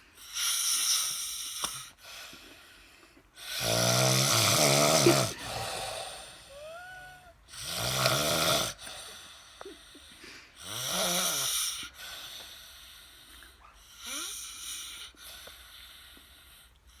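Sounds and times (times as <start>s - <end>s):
raspy snoring: 3.4s - 6.7s, 7.5s - 17.0s.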